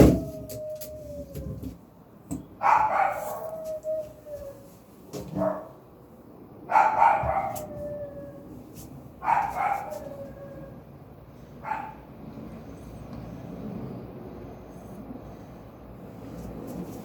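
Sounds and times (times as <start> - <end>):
dog crying: 6.7 - 8.6, 9.2 - 10.8.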